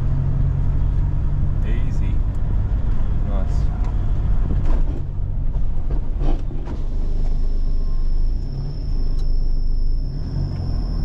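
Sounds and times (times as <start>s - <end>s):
vehicle engine and tyres rumbling: 0.0s - 11.0s
high-pitched insect drone: 7.4s - 11.0s.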